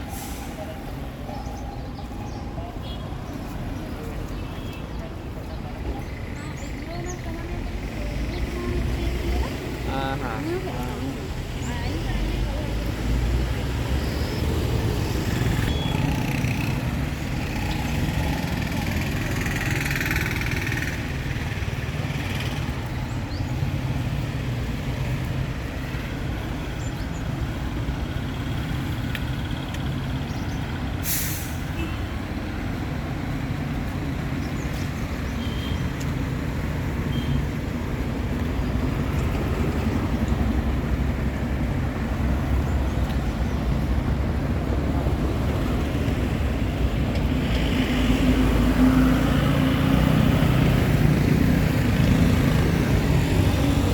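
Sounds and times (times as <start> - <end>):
diesel engine rumbling: 0.0 - 53.9
street traffic: 0.0 - 53.9
short hiss: 31.0 - 31.7.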